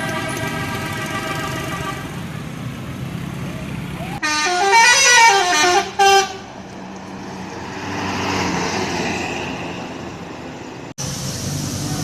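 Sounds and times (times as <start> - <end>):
multi-tone musical air horn: 0.0 - 2.2, 4.2 - 6.4
vehicle noise: 0.0 - 12.0.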